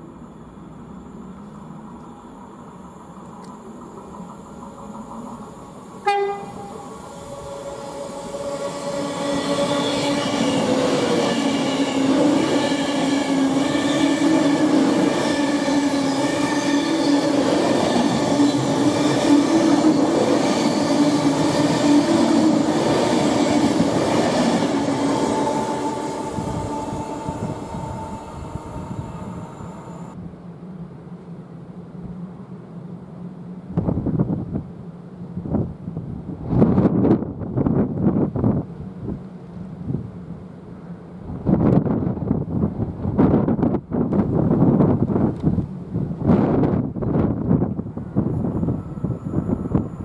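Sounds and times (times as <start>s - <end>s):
train passing at speed: 0.0s - 50.0s
train horn toot: 6.0s - 10.8s, 25.2s - 30.2s.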